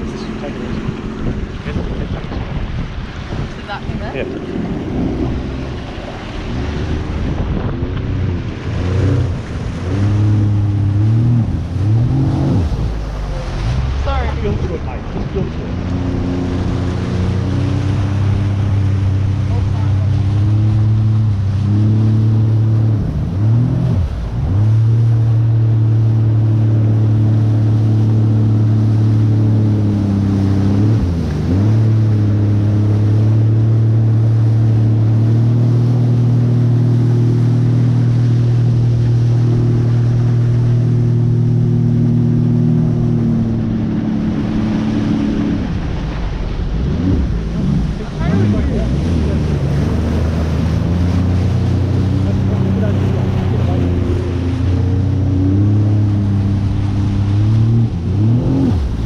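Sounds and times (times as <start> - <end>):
jet ski engine running: 0.0 - 59.0
water noise: 0.0 - 59.0
wind noise: 0.0 - 59.0.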